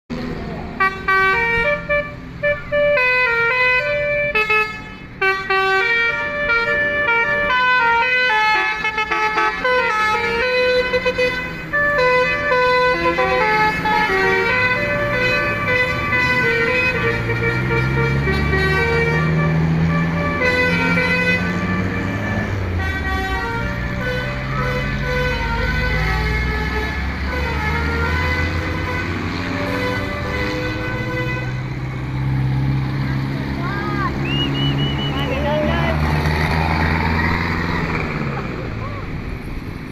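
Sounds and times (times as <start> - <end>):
multi-tone musical bus horn: 0.7 - 31.8, 33.8 - 36.0
low engine note: 9.9 - 39.8.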